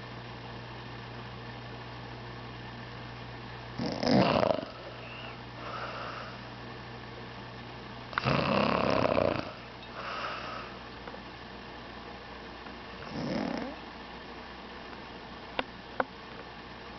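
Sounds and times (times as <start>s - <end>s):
woman snoring: 3.8s - 6.4s, 8.2s - 10.8s, 13.0s - 13.8s
soft breath out: 4.8s - 6.5s.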